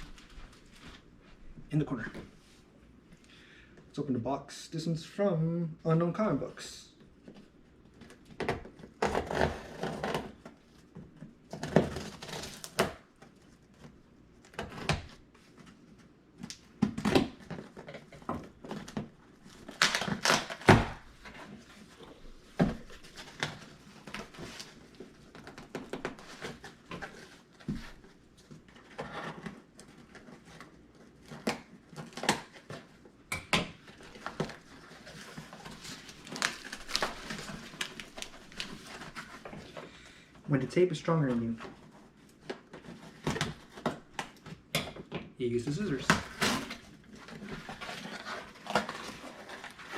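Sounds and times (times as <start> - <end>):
packing tape tearing: 8.5 - 10.5, 11.5 - 13.1, 16.4 - 21.5, 33.9 - 39.6, 45.8 - 49.9.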